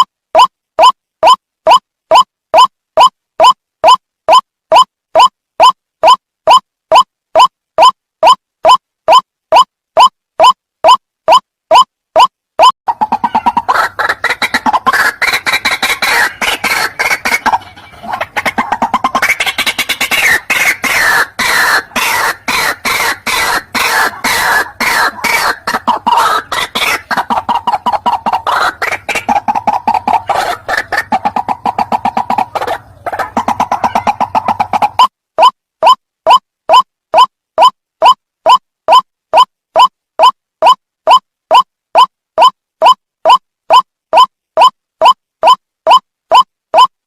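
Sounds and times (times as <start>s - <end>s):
waterhen calls: 12.6s - 36.8s.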